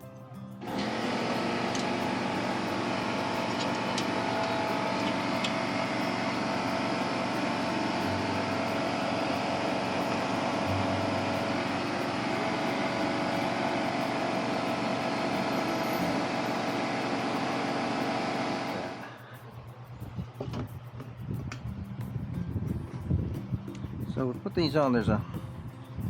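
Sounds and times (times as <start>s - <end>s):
machine rushing noise: 0.6s - 19.2s.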